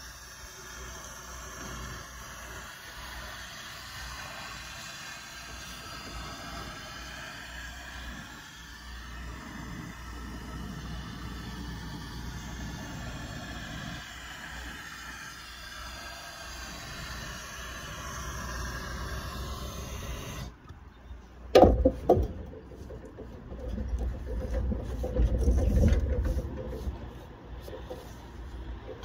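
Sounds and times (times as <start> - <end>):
gas blowtorch hissing: 0.0 - 20.6
loud rumbling noise: 5.3 - 20.5
sharp knocks: 21.5 - 22.9.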